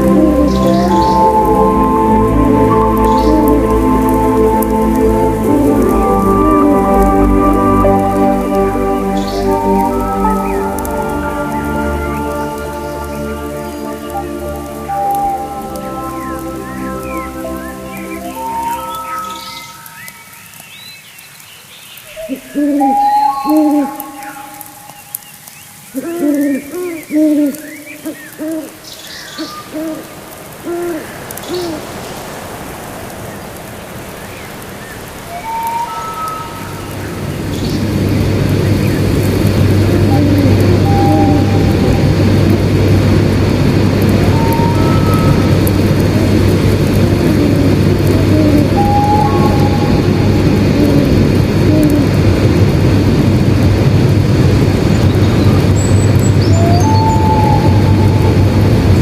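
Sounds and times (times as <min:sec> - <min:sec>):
steady hiss: 0:00.0 - 0:59.0
low rumbling roar: 0:36.8 - 0:59.0
bird hooting: 0:39.9 - 0:42.3, 0:44.1 - 0:45.8, 0:47.2 - 0:52.2, 0:56.6 - 0:58.4.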